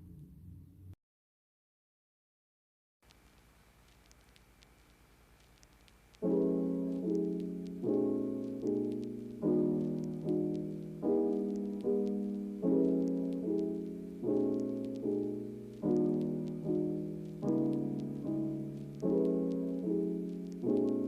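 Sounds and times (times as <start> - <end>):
soft piano chords: 6.2 - 21.0.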